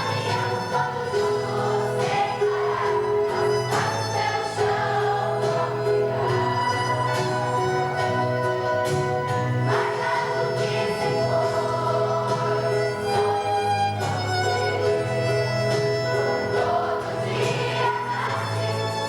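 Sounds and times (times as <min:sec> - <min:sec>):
choir singing with accompaniment: 0:00.0 - 0:19.0.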